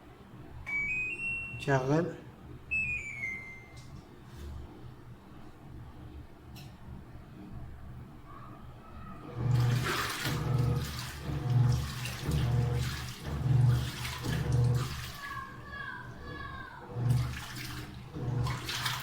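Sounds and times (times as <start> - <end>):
washing machine pulsing hum: 0.0 - 19.0
water rushing into machine: 9.2 - 19.0.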